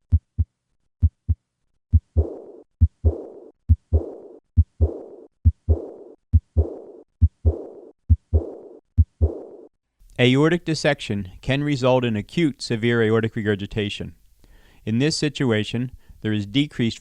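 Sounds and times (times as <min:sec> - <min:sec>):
heartbeat thumps: 0:00.0 - 0:09.6
heart murmur: 0:00.1 - 0:09.4.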